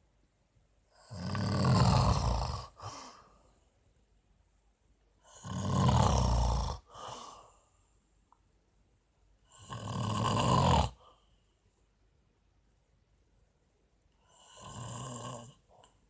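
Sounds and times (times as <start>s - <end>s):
man snoring: 1.0s - 3.2s, 5.2s - 7.2s, 9.5s - 11.0s, 14.3s - 15.7s
soft breath out: 2.8s - 3.8s, 6.9s - 8.0s.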